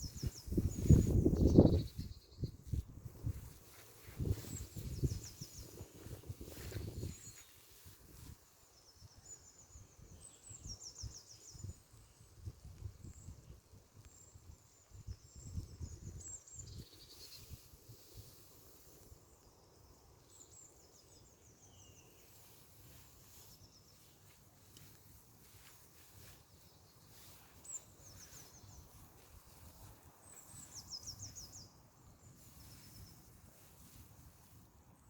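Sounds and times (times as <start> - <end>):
songbird trills: 0.0 - 2.8, 19.3 - 34.0.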